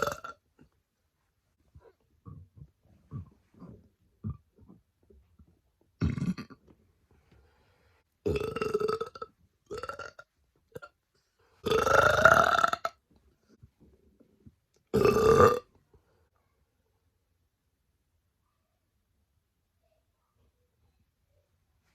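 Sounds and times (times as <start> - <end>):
woman burping: 6.0 - 6.6, 8.3 - 10.2, 11.6 - 12.9, 14.9 - 15.7.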